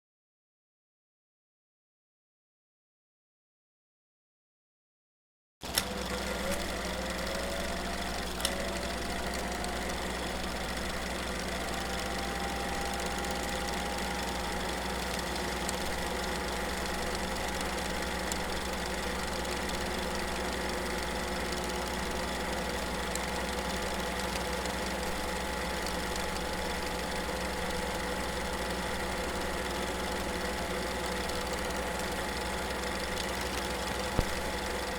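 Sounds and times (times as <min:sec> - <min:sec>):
film projector motor whirring: 0:05.6 - 0:34.9
film projector switch click: 0:05.7 - 0:12.0, 0:33.0 - 0:34.8.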